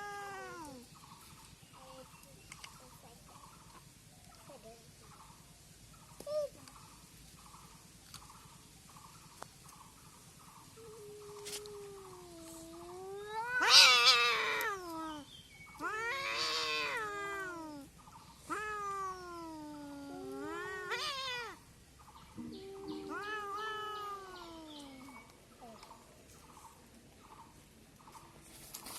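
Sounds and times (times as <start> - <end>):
cats yowling and screeching: 0.0 - 0.8, 10.8 - 21.6, 22.4 - 25.2.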